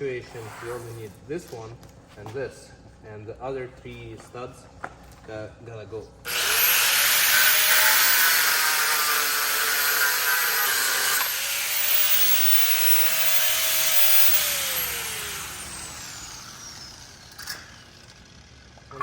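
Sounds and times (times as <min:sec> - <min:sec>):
power tool whirring on metal: 0:06.3 - 0:19.0.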